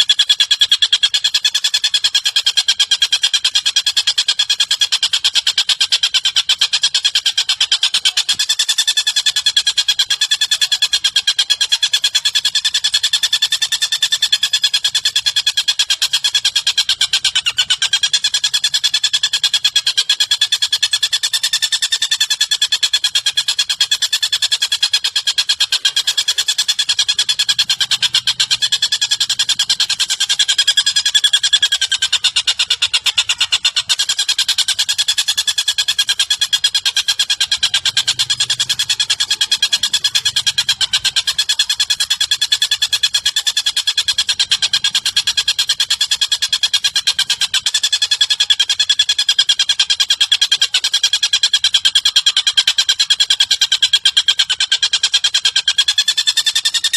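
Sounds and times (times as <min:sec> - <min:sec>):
high pulsing bird trill: 0:00.0 - 0:56.9.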